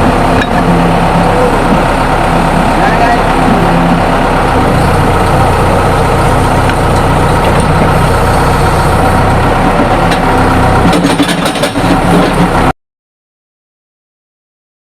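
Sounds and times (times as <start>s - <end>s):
large engine idling: 0.0s - 12.7s
sharp clicks and knocks: 9.6s - 12.6s.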